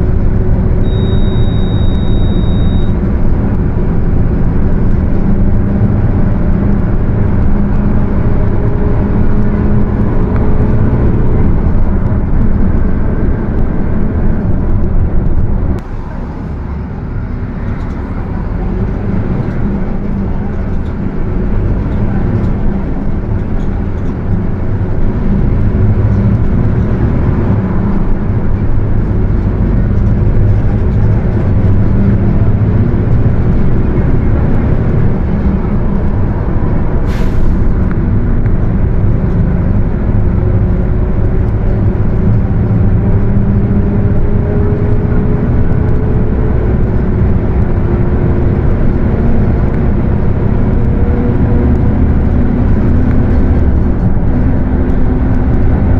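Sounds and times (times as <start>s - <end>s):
bus diesel engine accelerating: 0.0s - 55.9s
differential whine: 0.2s - 4.6s
short hiss: 37.1s - 37.6s.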